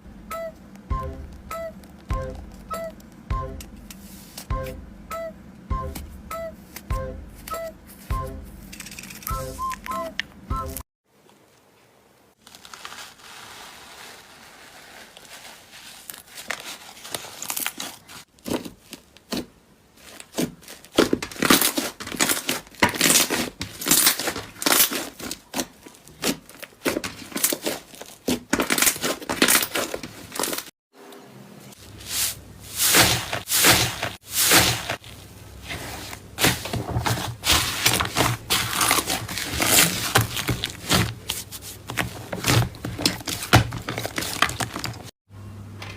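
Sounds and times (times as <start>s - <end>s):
steady low hum: 0.0s - 10.8s
slime crackling and crunching: 12.4s - 30.7s, 32.2s - 45.1s.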